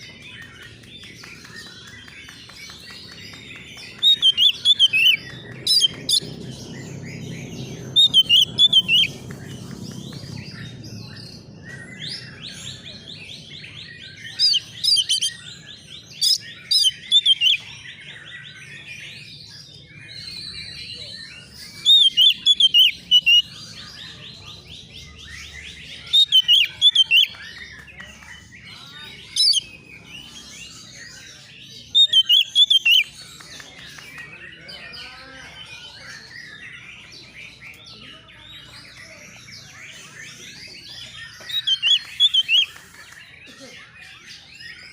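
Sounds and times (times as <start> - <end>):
bird whistling song: 0.1 - 19.1, 20.2 - 34.9, 38.6 - 44.9.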